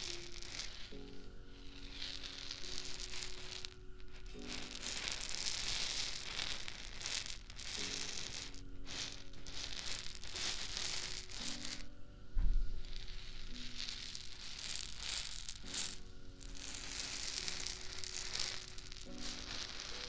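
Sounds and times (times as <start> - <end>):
prop crinkling and rustling: 0.0 - 20.0
soft background music chords: 0.0 - 20.0
low thump: 12.4 - 12.8.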